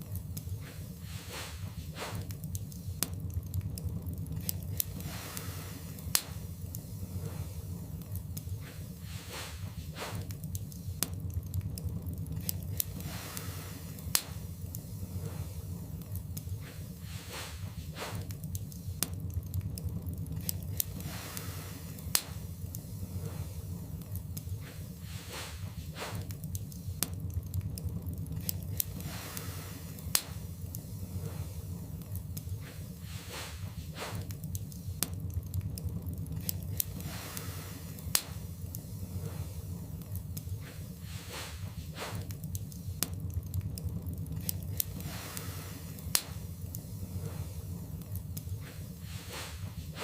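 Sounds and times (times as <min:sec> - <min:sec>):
fire crackling and popping: 0:00.0 - 0:50.0
low fire rumble: 0:00.0 - 0:50.0.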